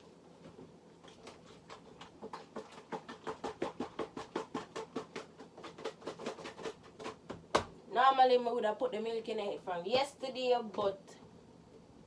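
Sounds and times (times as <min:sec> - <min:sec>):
chicken wings knocking in shaken container: 0:01.1 - 0:07.8.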